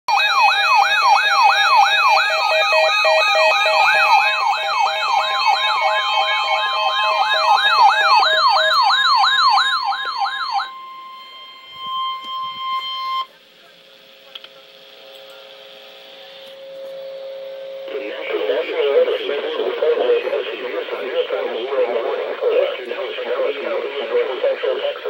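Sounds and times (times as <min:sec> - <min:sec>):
electronic siren yelping: 0:00.1 - 0:13.3
steady electronic tone: 0:01.6 - 0:13.3, 0:16.2 - 0:25.0.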